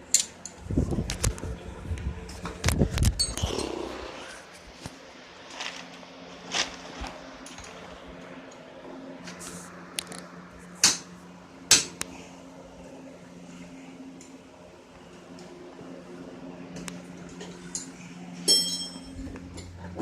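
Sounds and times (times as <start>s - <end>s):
clicks and knocks of tools: 0.1s - 1.4s.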